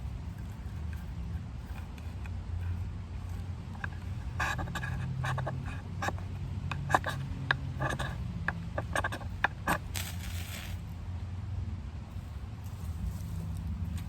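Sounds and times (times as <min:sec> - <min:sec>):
knife scraping ferro rod: 0:00.0 - 0:10.8
steady low hum: 0:00.0 - 0:14.0.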